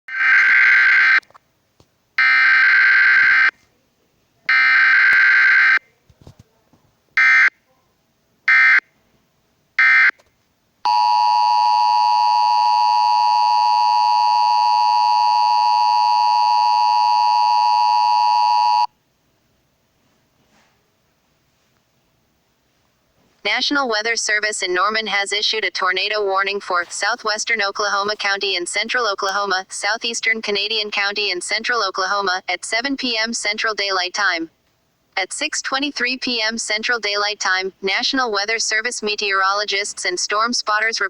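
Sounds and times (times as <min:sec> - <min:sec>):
two-tone attention signal: 0:10.9 - 0:18.9.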